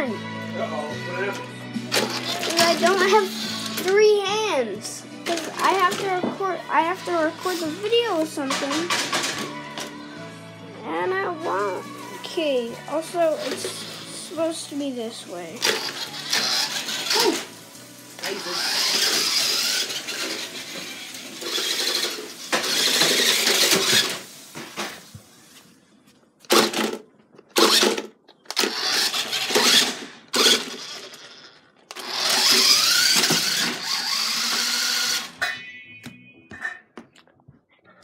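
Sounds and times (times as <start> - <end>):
toy car motor whirring: 1.9 - 4.4, 5.2 - 6.2, 6.8 - 9.0, 12.9 - 24.3, 27.6 - 35.4.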